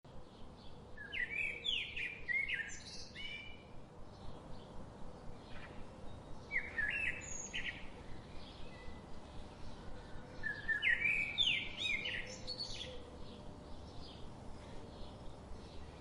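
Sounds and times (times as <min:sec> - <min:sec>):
bird singing whistled notes: 0:01.0 - 0:03.7, 0:05.5 - 0:09.0, 0:10.4 - 0:14.2.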